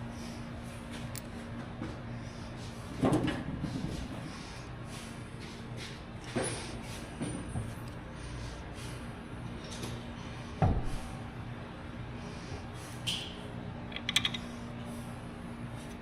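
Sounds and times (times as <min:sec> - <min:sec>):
steady low hum: 0:00.0 - 0:16.0
hard parts knocking and clunking: 0:13.9 - 0:14.4.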